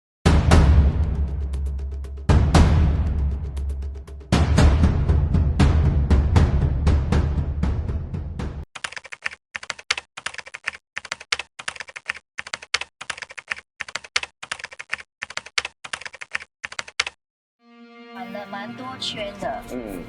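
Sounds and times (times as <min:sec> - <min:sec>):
music: 0:00.3 - 0:08.6, 0:17.6 - 0:20.0
rapid keyboard typing: 0:08.8 - 0:17.2.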